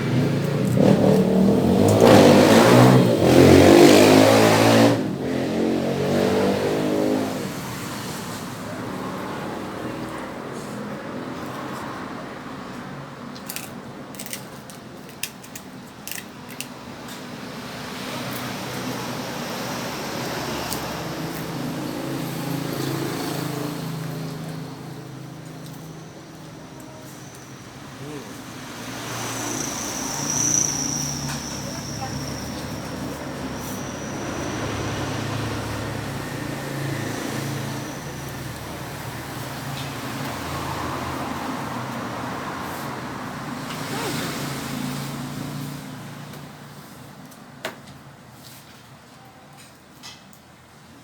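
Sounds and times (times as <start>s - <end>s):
engine revving: 0.0s - 10.1s, 17.6s - 25.3s, 28.0s - 46.3s.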